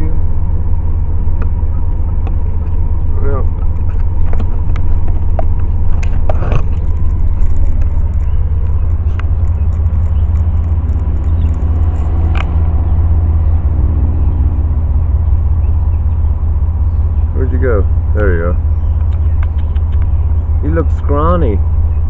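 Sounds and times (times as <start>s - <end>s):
car cabin rumble: 0.0s - 22.0s
light clicks: 19.0s - 20.1s.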